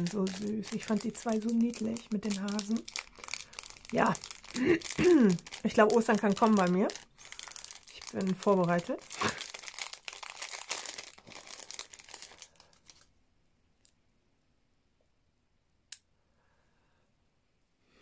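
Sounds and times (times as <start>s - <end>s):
packaging crinkling and rustling: 0.0s - 13.1s.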